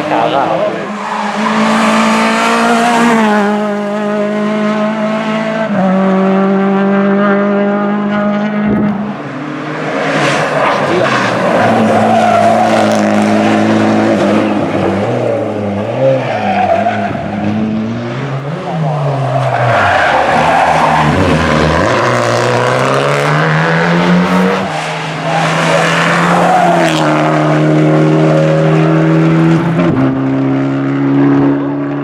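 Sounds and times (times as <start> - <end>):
tyres squealing and skidding: 0.0 - 4.2, 10.0 - 15.2, 15.8 - 17.7, 18.7 - 29.8
rally car engine revving: 0.0 - 32.0.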